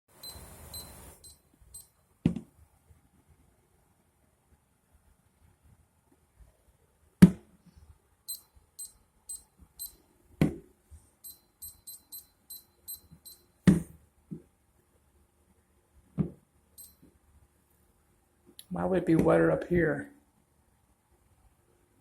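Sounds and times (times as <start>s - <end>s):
short high beeps: 0.1s - 2.0s, 8.3s - 10.0s, 11.2s - 13.6s, 16.8s - 17.0s.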